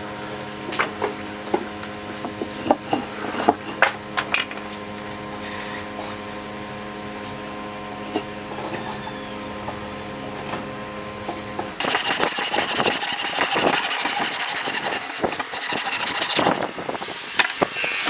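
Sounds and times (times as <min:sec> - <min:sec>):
steady hum: 0:09.4 - 0:18.0
tools and wood knocking: 0:11.8 - 0:16.7.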